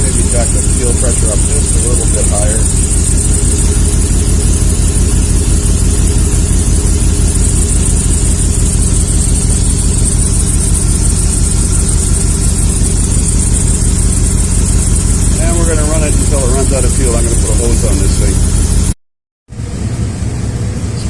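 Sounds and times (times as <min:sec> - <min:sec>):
car engine idling: 0:00.0 - 0:18.9.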